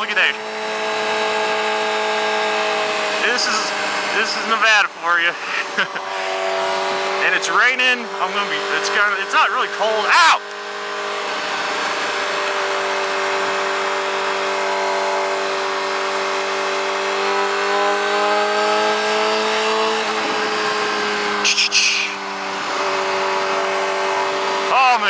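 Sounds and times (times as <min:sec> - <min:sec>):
motorcycle engine running: 0:00.3 - 0:25.0.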